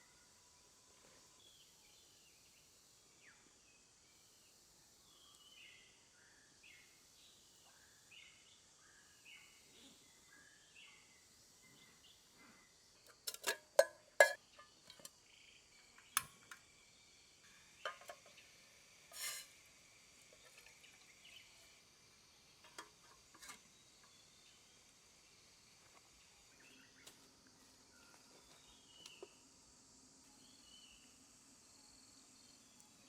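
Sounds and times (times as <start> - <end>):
forest insects chirring: 1.4 - 33.0
short scrape: 19.1 - 19.6.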